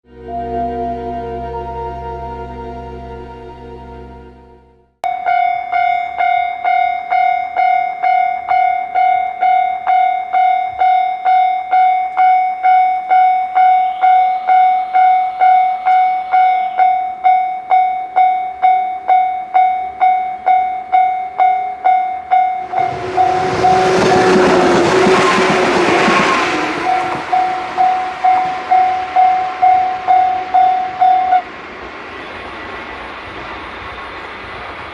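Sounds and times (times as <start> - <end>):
train passing: 0.0 - 34.9
level crossing warning bell ringing: 0.1 - 4.2, 5.0 - 31.5.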